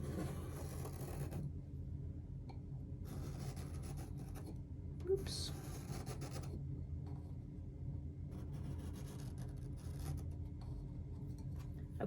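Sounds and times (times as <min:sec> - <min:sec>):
pencil scratching on cardstock: 0:00.0 - 0:01.4, 0:03.0 - 0:04.5, 0:05.5 - 0:06.6, 0:08.4 - 0:11.0.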